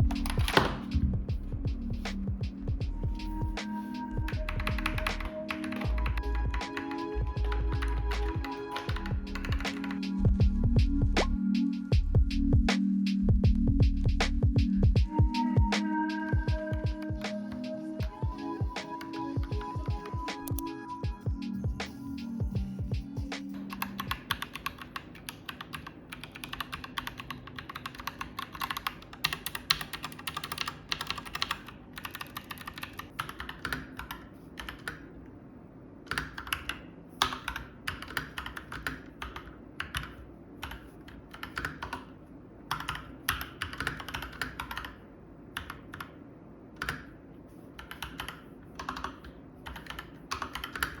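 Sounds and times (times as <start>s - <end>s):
mechanical keyboard typing: 0.0s - 1.1s, 4.2s - 10.2s, 23.3s - 35.1s, 36.1s - 45.0s, 45.6s - 46.2s, 46.8s - 47.2s, 47.8s - 51.0s
background music: 0.0s - 25.3s.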